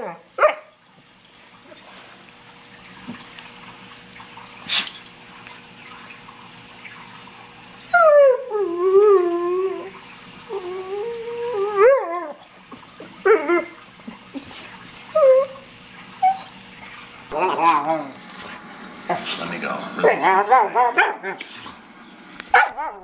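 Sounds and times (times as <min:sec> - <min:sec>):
dog howling and whining: 0:07.9 - 0:12.5, 0:13.1 - 0:13.8, 0:15.1 - 0:18.3, 0:19.9 - 0:21.4, 0:22.5 - 0:23.0.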